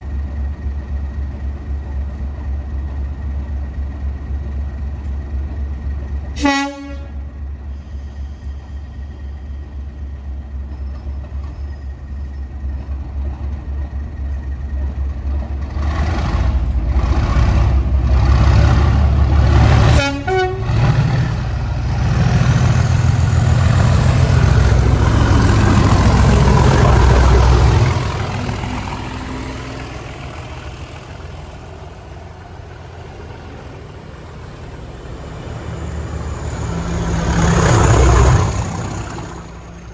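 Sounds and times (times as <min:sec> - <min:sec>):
diesel locomotive engines running: 0:00.0 - 0:39.9
locomotive horn blasts: 0:06.4 - 0:07.3, 0:19.9 - 0:20.8.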